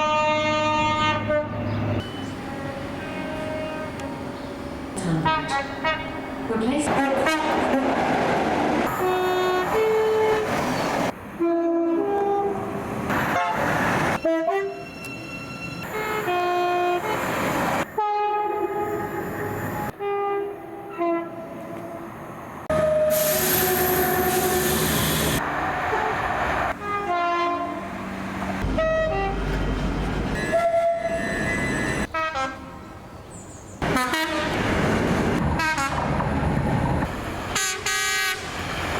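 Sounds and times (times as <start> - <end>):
two-note train horn blasts: 0.0 - 4.2, 22.7 - 26.2
trains running: 1.3 - 33.1, 33.8 - 38.9.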